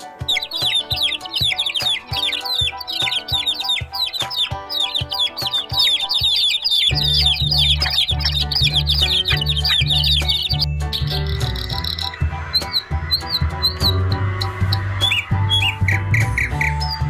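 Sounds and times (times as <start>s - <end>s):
background music with held notes: 0.0s - 17.0s
birds chirping: 0.0s - 17.0s
deep bass line: 6.9s - 17.0s.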